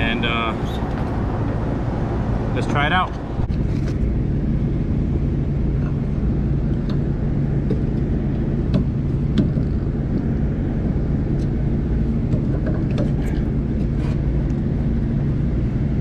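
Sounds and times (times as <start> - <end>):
machinery hum: 0.0 - 16.0.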